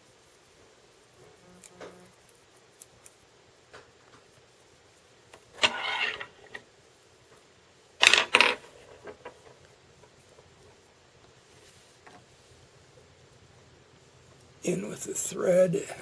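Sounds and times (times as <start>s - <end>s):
wire scraping rustle: 5.4s - 6.6s.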